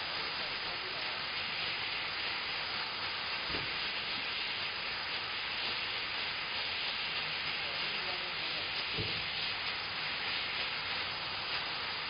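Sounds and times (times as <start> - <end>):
steam mop hissing: 0.0 - 12.0
low thump: 9.0 - 9.2.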